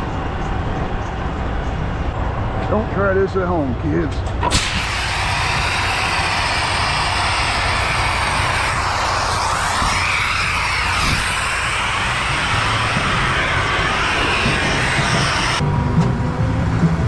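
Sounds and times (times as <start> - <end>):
low engine rumble: 0.0 - 17.0
loud steady hiss: 4.4 - 15.6.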